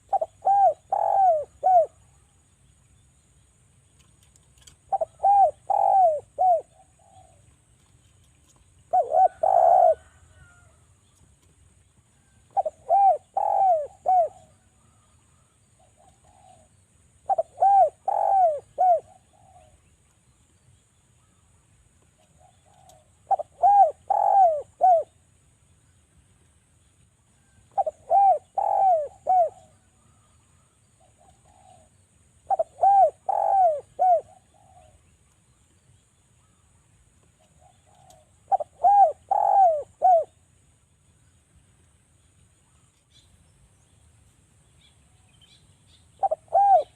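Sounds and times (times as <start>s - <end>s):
dove cooing: 0.0s - 2.2s, 4.6s - 7.7s, 8.5s - 10.8s, 12.3s - 15.2s, 15.8s - 19.8s, 22.2s - 25.2s, 27.4s - 35.1s, 37.4s - 40.4s, 46.2s - 46.9s.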